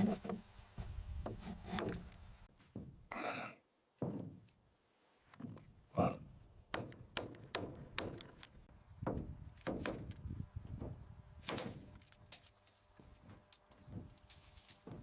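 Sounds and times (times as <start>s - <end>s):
knocks and thuds on wood: 4.0s - 4.5s, 6.7s - 8.4s, 9.0s - 11.9s.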